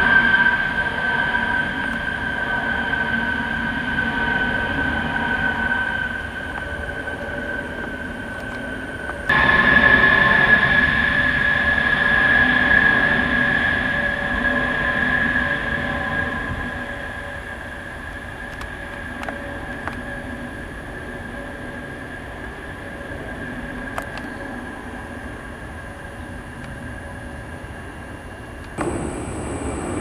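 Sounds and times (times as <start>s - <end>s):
aircraft engine whine: 0.0s - 30.0s
steady rumble: 26.4s - 30.0s.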